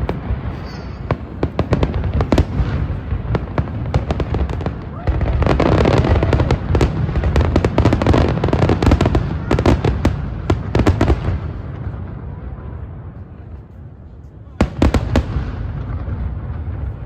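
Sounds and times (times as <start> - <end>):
fireworks cracks and bangs: 0.0 - 13.6, 14.6 - 17.0.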